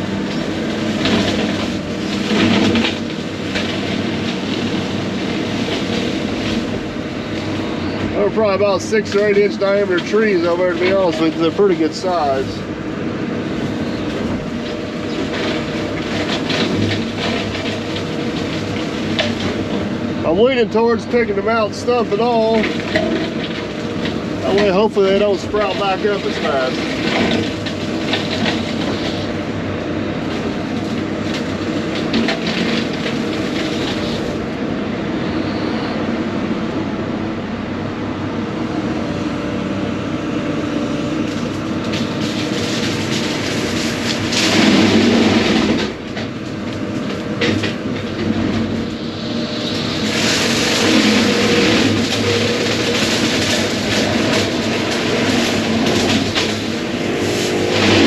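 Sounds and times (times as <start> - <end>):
excavator diesel engine: 0.0 - 58.0
brush cutter cutting brush: 50.3 - 58.0.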